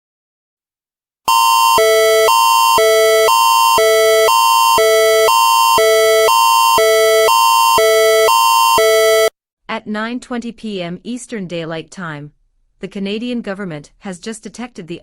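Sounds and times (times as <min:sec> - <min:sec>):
alternating electronic alert tone: 0:01.3 - 0:09.3.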